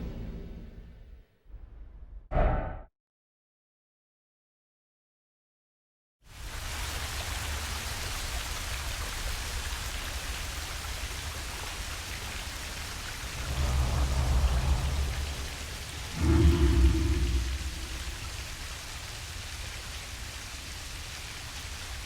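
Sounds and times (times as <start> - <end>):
steady rain: 6.3 - 22.0
deep rumbles: 13.0 - 18.6.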